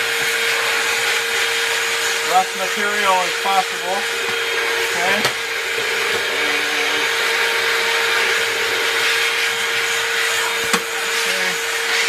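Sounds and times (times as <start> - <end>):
vacuum cleaner running: 0.0 - 12.0.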